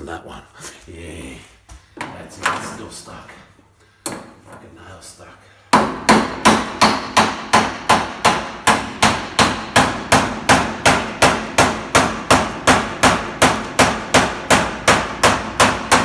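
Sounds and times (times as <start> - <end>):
hammer striking a chisel: 5.7 - 16.0.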